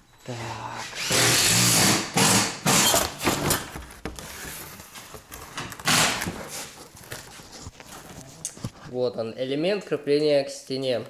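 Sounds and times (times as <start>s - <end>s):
power drill driving screws: 1.0s - 3.6s, 5.8s - 6.4s.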